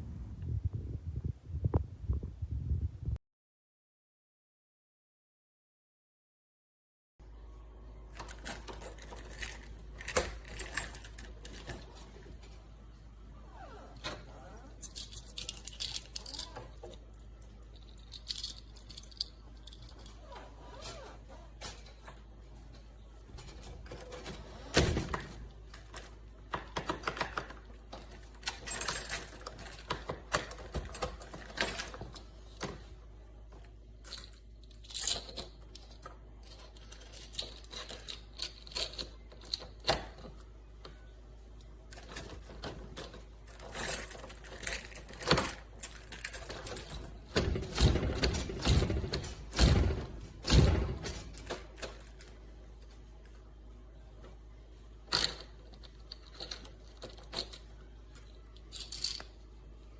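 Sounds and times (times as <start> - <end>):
metallic clicks and knocks of hardware: 41.9 - 52.4.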